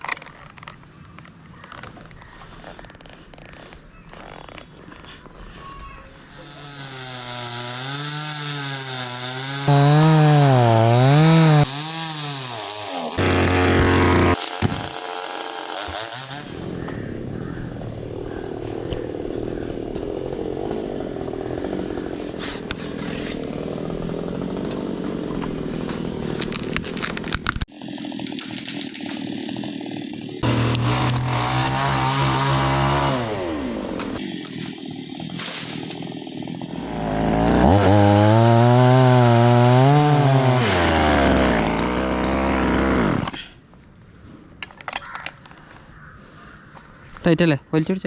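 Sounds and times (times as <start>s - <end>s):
chainsaw cutting wood: 6.3s - 16.9s, 19.9s - 43.4s.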